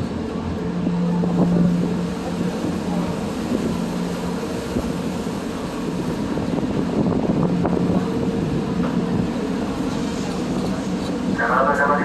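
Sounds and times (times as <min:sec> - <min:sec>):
ferry engine droning: 0:00.0 - 0:12.0
wind on microphone: 0:04.6 - 0:11.1.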